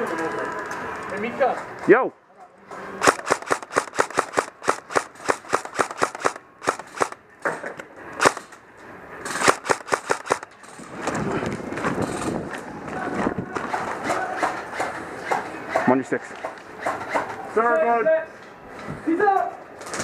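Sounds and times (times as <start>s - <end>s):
airsoft guns firing pops: 3.0s - 7.2s, 9.4s - 10.5s.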